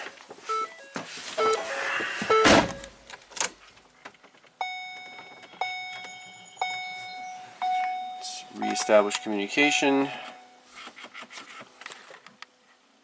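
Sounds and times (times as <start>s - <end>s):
short beeps: 0.5s - 2.9s, 4.6s - 10.6s
warning chime dinging: 4.6s - 10.6s.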